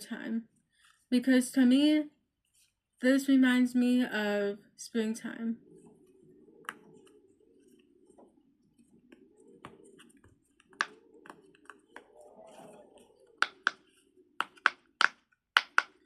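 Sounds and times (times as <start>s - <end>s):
pop-it fidget toy popping: 13.4s - 13.8s, 14.4s - 16.0s.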